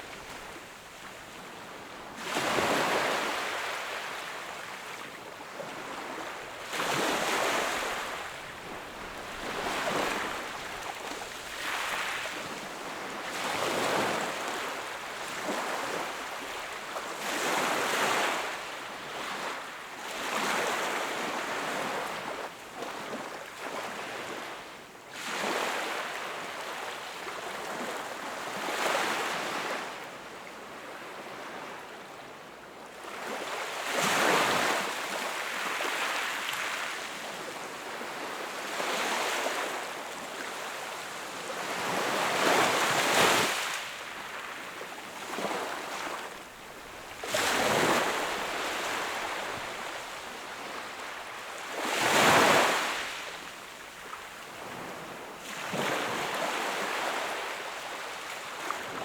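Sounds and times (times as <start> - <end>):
ocean waves breaking on shore: 5.7 - 16.6, 33.1 - 59.0.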